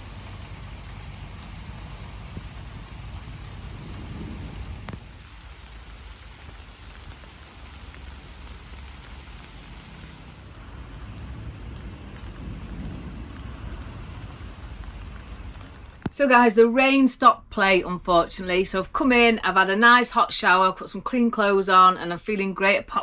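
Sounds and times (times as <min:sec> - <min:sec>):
low rumble: 0:00.0 - 0:16.1
rain falling: 0:00.0 - 0:16.3.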